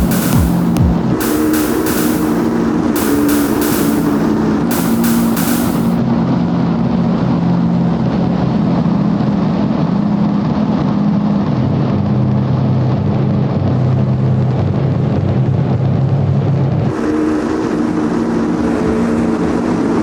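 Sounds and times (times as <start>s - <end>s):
distorted electronic noise music: 0.0s - 6.0s.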